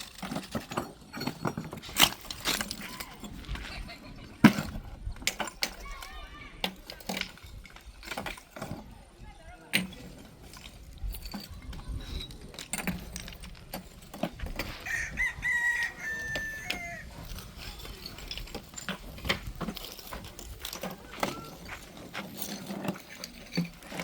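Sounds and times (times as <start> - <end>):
rooster crowing: 14.8 - 17.1
scattered knocks and clicks: 16.6 - 24.0.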